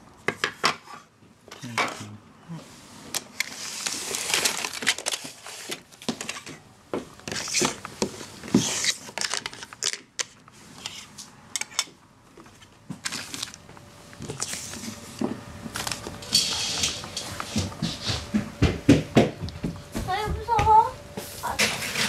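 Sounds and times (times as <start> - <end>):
plastic packaging rustling: 3.1 - 6.6, 7.2 - 11.2, 12.4 - 17.9.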